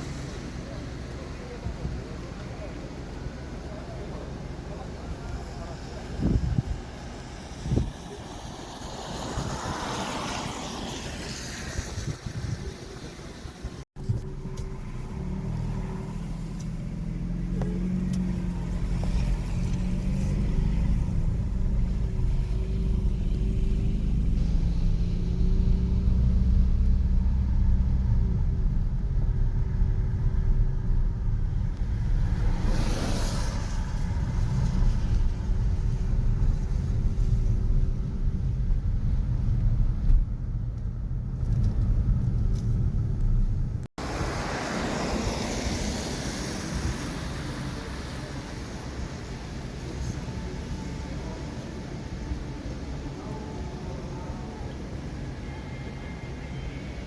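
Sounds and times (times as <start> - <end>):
traffic rumble: 0.0 - 57.0
vehicle swishing past: 7.4 - 13.2, 14.0 - 38.6, 41.5 - 49.1.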